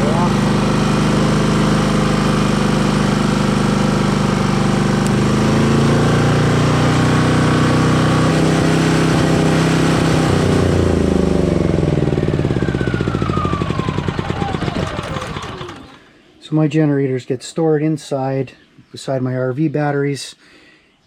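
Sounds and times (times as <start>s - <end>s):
portable generator engine running: 0.0s - 16.1s.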